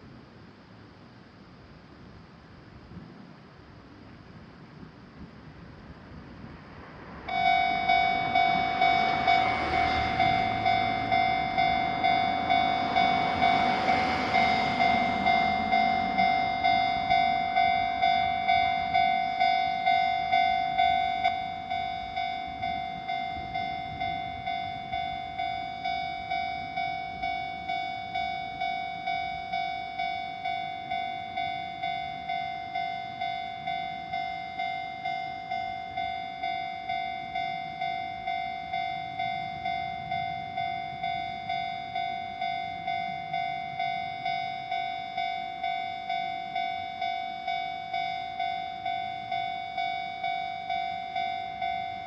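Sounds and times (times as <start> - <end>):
railroad crossing bell ringing: 6.9 - 52.0.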